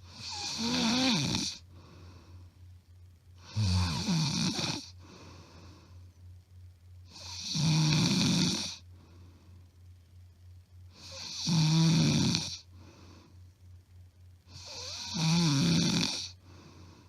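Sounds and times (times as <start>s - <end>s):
woman snoring: 0.0s - 1.6s, 3.4s - 5.0s, 7.1s - 8.8s, 11.0s - 12.7s, 14.5s - 16.5s
quiet breathing: 0.0s - 7.4s, 8.2s - 11.4s, 12.2s - 17.0s.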